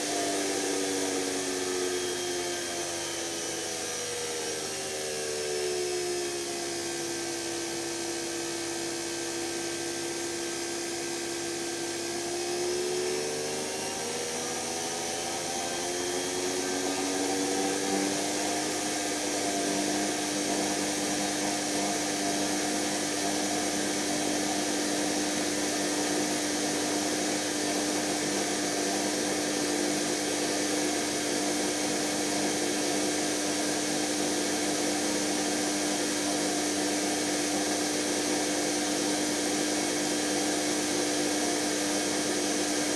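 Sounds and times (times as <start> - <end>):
washing machine motor whining: 8.5 - 42.9.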